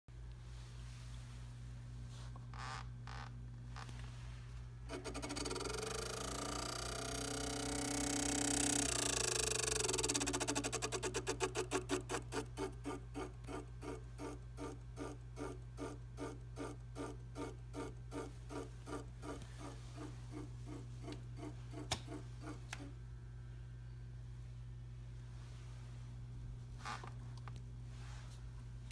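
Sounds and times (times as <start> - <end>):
low hum: 3.8 - 26.7
trainer flywheel clicking: 4.9 - 23.0.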